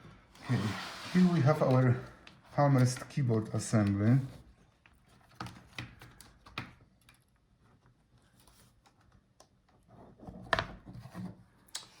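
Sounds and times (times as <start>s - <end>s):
small scrapes: 0.4s - 1.7s
laptop parts clicking and knocking: 5.3s - 7.2s.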